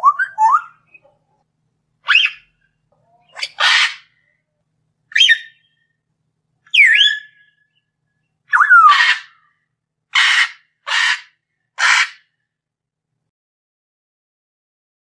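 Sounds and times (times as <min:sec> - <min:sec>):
lovebirds squawking: 0:03.2 - 0:04.2, 0:08.5 - 0:09.4, 0:10.2 - 0:12.2.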